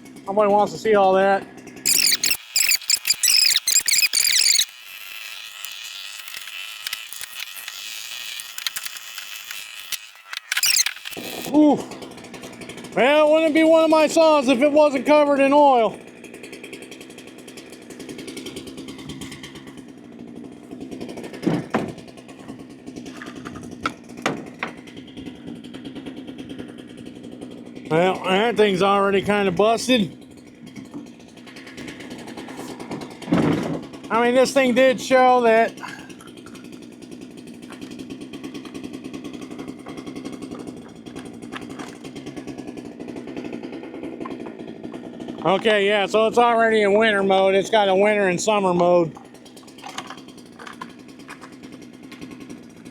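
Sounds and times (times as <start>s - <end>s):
chainsaw idling: 0.0s - 52.9s.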